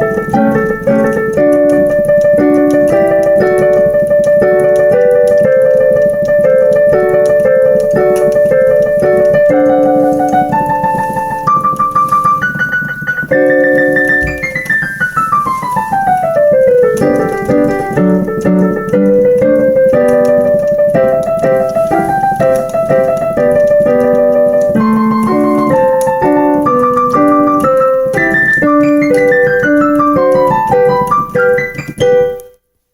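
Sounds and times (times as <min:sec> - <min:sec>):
digital piano melody: 0:00.0 - 0:32.7.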